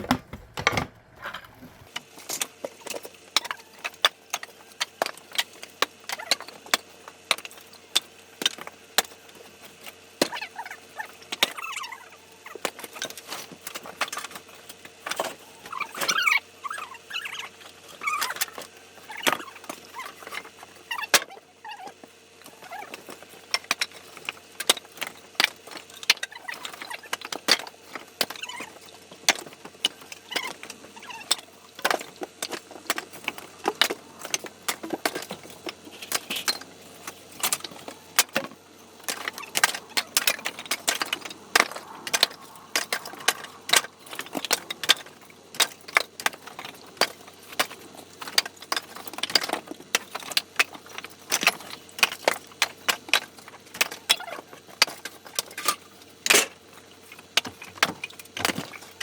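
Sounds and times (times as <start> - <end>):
firewood knocking and clattering: 0.0 - 1.7.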